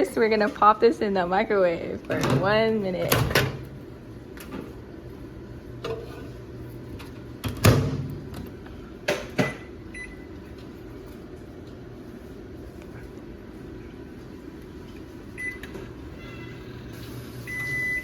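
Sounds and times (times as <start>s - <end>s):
microwave low hum: 0.0s - 18.0s
short keypad beeps: 17.5s - 18.0s.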